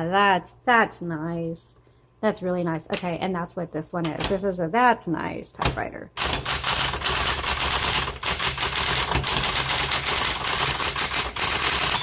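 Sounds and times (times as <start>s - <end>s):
typewriter key strikes: 6.2s - 12.0s
typewriter motor hum: 6.2s - 12.0s.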